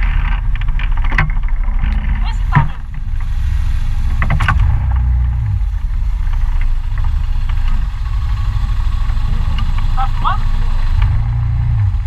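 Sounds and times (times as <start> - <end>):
scooter engine rumbling: 0.0 - 12.0.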